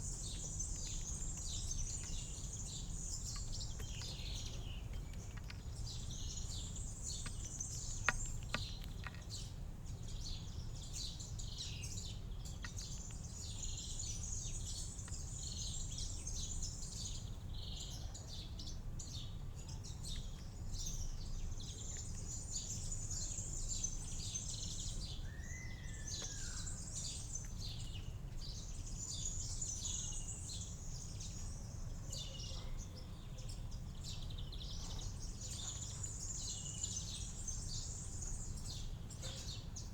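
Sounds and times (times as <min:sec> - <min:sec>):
small birds chirping: 0:00.0 - 0:39.9.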